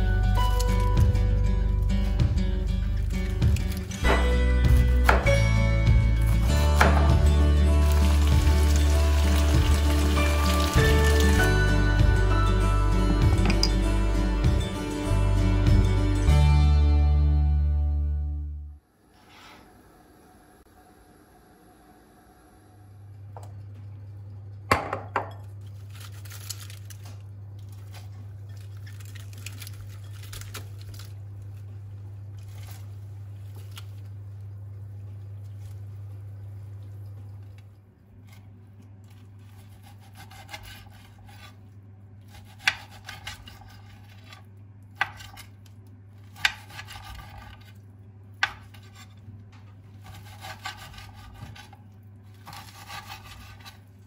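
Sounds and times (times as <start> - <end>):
dishes and utensils clinking: 13.1 - 13.8.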